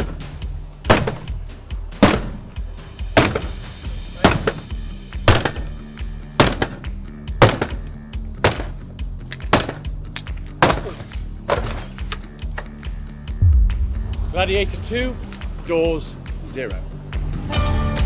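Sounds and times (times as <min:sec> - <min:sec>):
background music: 0:00.0 - 0:18.0
sledgehammer striking door: 0:03.1 - 0:03.6.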